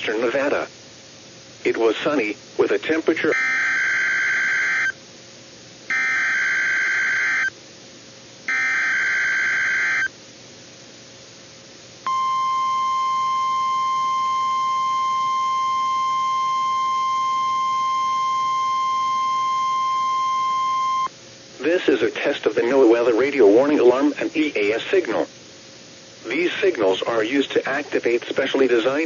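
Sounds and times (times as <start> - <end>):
steady warning alarm tone: 3.3 - 5.0, 5.9 - 7.5, 8.5 - 10.1, 12.1 - 21.1
screechy digital header bursts: 5.9 - 7.5, 8.5 - 10.1.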